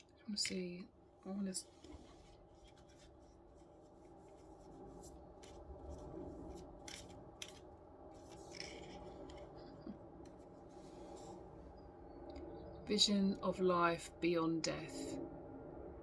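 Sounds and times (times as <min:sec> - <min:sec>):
low hum: 0:00.0 - 0:16.0
scraping and rustling: 0:01.6 - 0:11.5.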